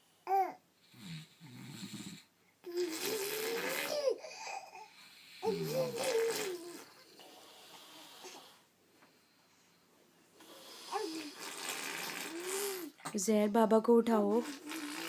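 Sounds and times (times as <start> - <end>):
baby imitating snoring: 0.3 - 8.6, 10.4 - 13.1, 14.4 - 15.0.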